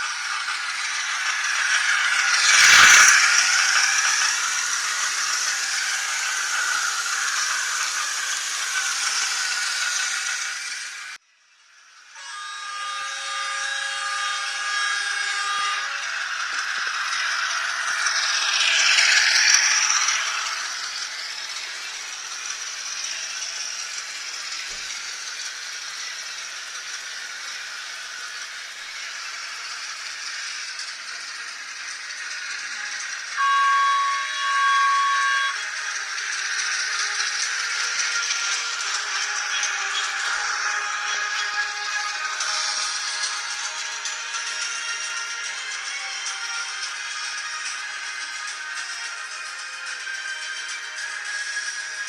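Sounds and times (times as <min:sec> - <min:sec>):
loud hissing: 0:00.0 - 0:11.2, 0:13.6 - 0:44.7
rattly running hiss: 0:00.0 - 0:52.0
short horn blasts: 0:33.4 - 0:35.6
locomotive chord horn: 0:33.4 - 0:36.3.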